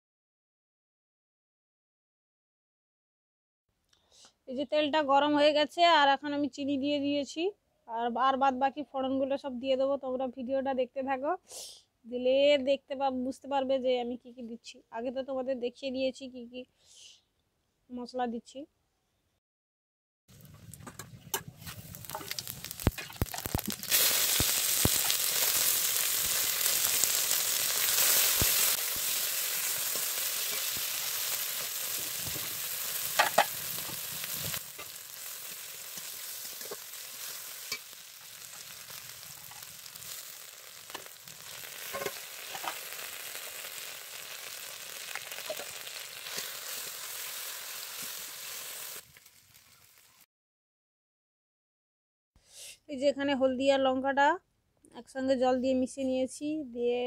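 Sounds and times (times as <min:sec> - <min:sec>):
spices sizzling in hot oil: 0:20.3 - 0:50.3
spoon scraping a pan: 0:29.8 - 0:35.2, 0:35.9 - 0:40.2, 0:40.9 - 0:43.0, 0:45.4 - 0:46.8.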